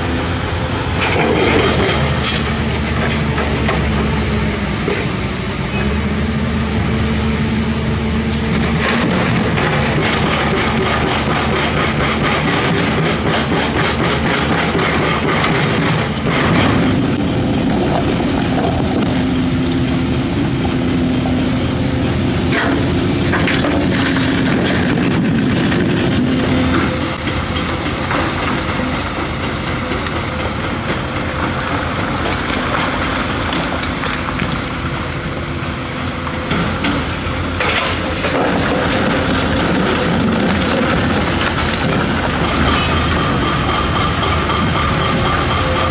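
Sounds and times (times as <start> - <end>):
excavator diesel engine under load: 0.0 - 45.9
excavator bucket clanks and knocks: 1.0 - 4.1, 8.7 - 19.3, 36.5 - 45.9.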